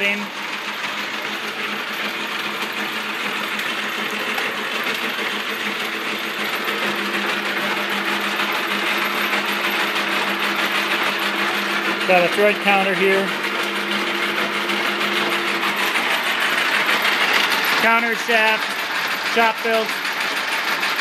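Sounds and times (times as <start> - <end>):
metal lathe clattering: 0.0 - 21.0.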